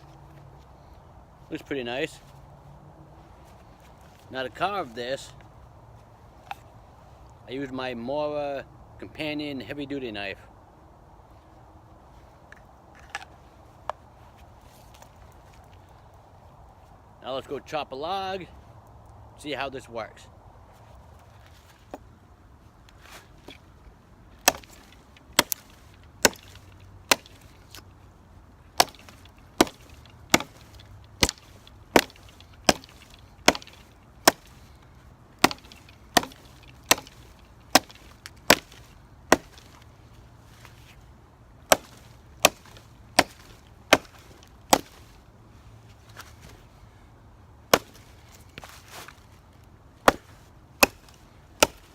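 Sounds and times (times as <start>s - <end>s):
hatchet chopping into log: 24.4s - 27.8s, 28.8s - 34.8s, 35.4s - 39.8s, 41.7s - 45.0s, 47.7s - 48.7s, 50.0s - 51.9s.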